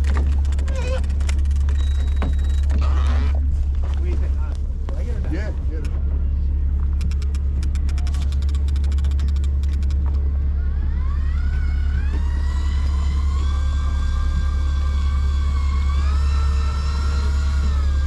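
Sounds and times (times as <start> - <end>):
boat engine droning: 0.0 - 18.0
electric fishing reel whine: 8.6 - 18.0.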